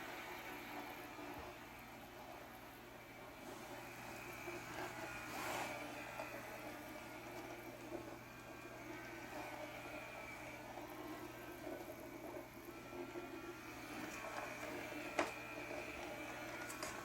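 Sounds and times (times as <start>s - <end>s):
robot vacuum motor hum: 0.0s - 17.0s.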